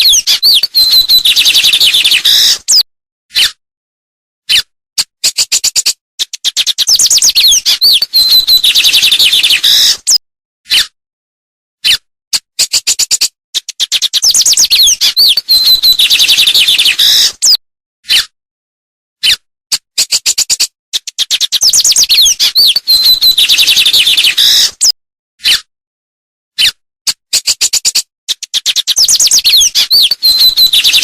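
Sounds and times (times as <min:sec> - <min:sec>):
songbird singing trills: 0:00.0 - 0:02.8, 0:06.4 - 0:09.9, 0:13.6 - 0:17.6, 0:21.3 - 0:24.7, 0:28.7 - 0:31.0.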